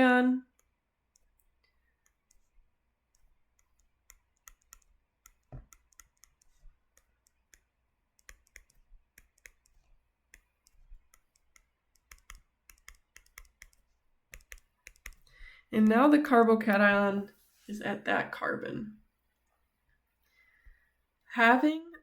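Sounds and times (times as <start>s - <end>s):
clicks and taps of drawing: 0.5s - 15.6s.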